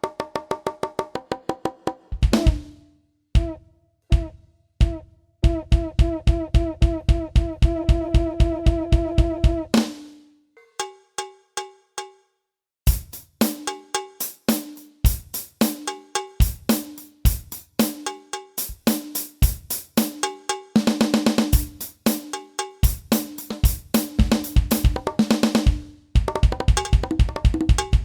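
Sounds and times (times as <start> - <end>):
electronic drum kit groove: 2.1 - 2.8, 4.2 - 10.1, 12.9 - 28.0.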